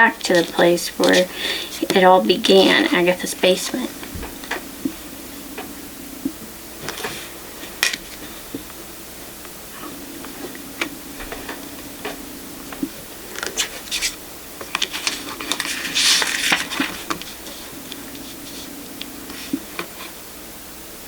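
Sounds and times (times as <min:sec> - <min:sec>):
cards sliding and rustling: 0:14.8 - 0:17.7.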